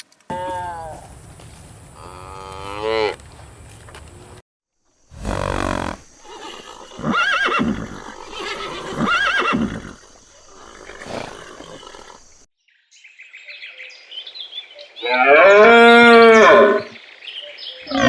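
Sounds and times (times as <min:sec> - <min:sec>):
farm animal calls: 0:00.3 - 0:04.4, 0:05.1 - 0:12.4.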